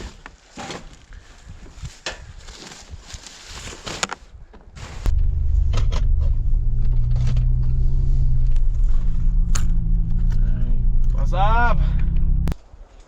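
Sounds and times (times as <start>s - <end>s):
car engine rumbling: 4.8s - 12.6s.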